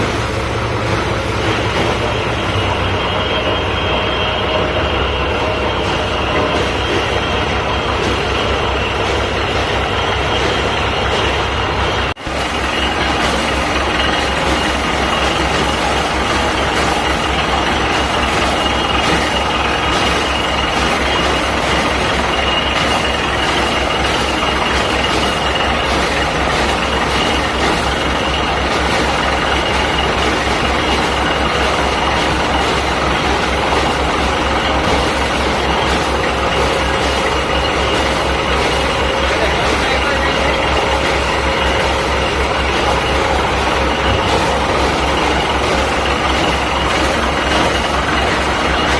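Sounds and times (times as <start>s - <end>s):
high whine: 0.0s - 25.8s
heavy engine noise: 0.0s - 48.9s.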